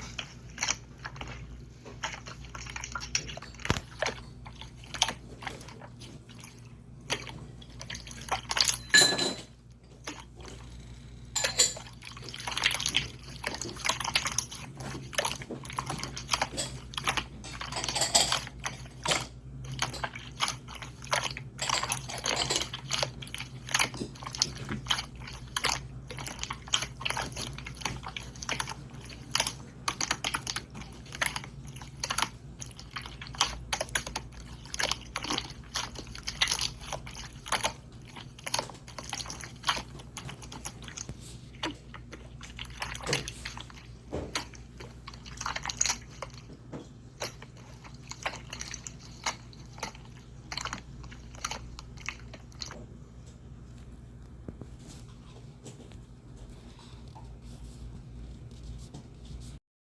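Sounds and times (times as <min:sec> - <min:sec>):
slime squelching and popping: 0:00.0 - 0:08.9.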